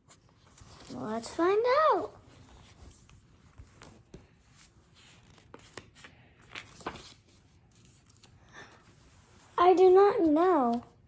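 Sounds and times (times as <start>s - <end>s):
paper pages rustling: 0.0s - 9.6s.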